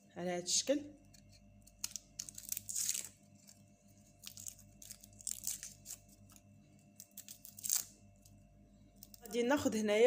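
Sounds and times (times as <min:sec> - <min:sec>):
garlic skins crackling and tearing: 0:01.1 - 0:08.4, 0:09.0 - 0:09.4.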